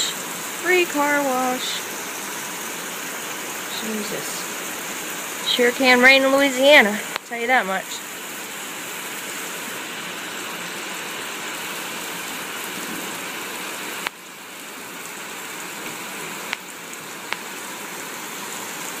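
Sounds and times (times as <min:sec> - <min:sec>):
heavy rain pouring: 0:00.0 - 0:19.0.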